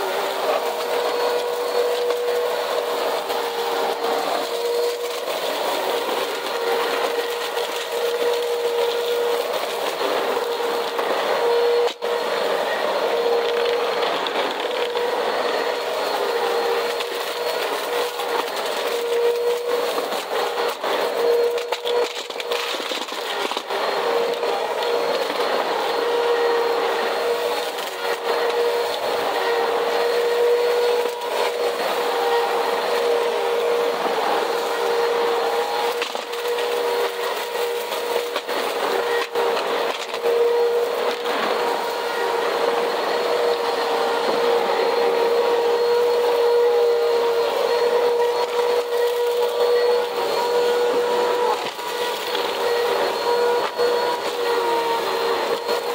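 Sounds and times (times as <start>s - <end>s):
vacuum cleaner motor whine: 0.0s - 55.9s.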